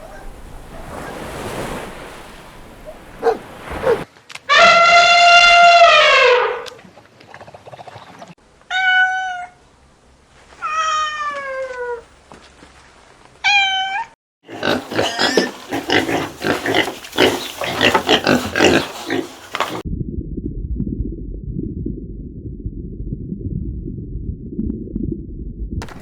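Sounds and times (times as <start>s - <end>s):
cat meowing: 8.7s - 9.6s, 10.6s - 12.0s, 13.4s - 14.2s
pig grunting: 14.4s - 19.8s.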